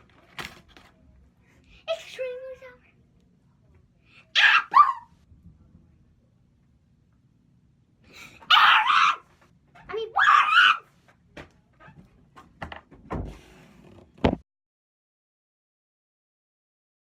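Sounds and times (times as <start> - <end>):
person screaming: 4.4 - 5.1, 8.5 - 9.2, 10.1 - 10.8.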